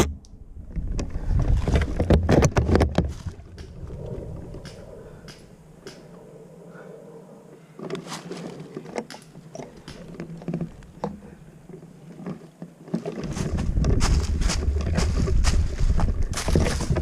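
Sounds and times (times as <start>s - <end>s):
wind buffeting microphone: 0.0s - 7.5s, 13.2s - 17.0s
rustling and crunching: 0.7s - 6.3s, 7.6s - 17.0s.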